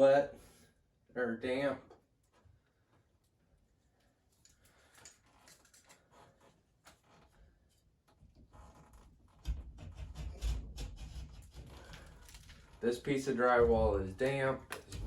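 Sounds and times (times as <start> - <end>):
faint scratching and ticking: 4.4 - 15.0.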